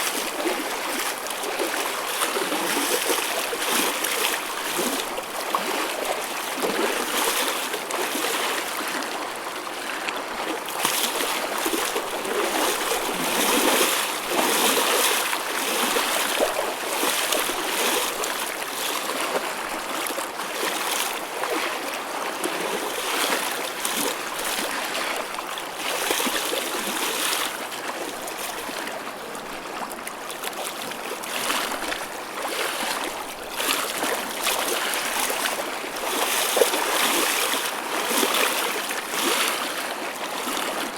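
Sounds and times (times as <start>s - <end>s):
waves splashing: 10.5s - 19.1s.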